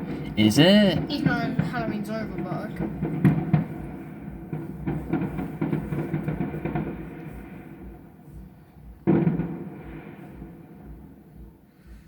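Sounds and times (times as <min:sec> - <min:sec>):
firework bang: 0:00.0 - 0:08.2, 0:09.0 - 0:11.3
distant fireworks crackling: 0:00.0 - 0:12.0.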